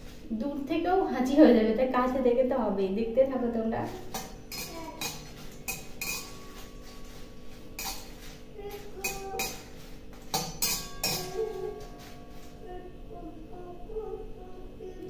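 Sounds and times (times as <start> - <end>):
utensil scraping and clinking on pan: 3.9 - 12.6.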